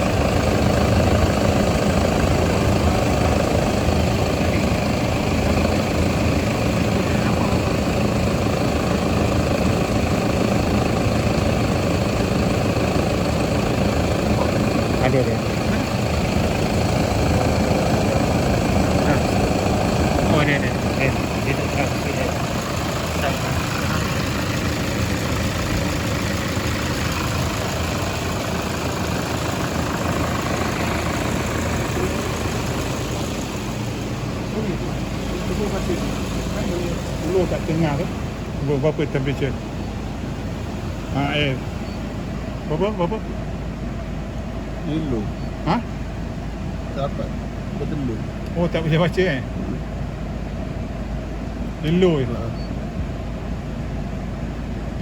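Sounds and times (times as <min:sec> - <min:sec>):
air conditioning running: 0:00.0 - 0:55.0
car engine idling: 0:00.0 - 0:55.0.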